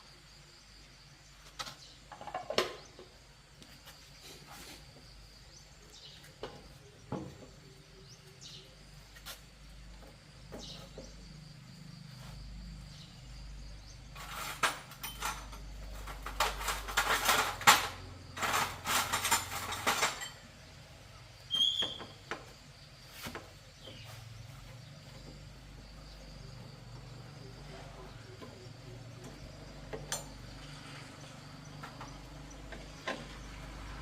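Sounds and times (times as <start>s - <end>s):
metal clinking and rattling: 14.1s - 20.7s.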